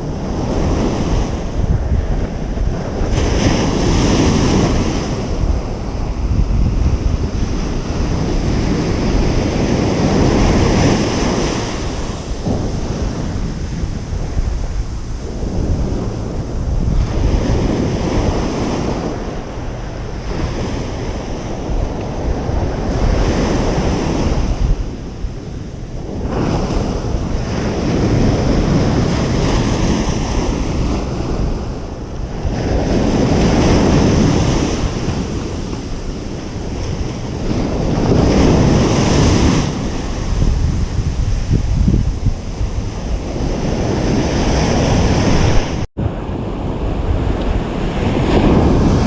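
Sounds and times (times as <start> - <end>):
ocean surf breaking: 0.0 - 49.0.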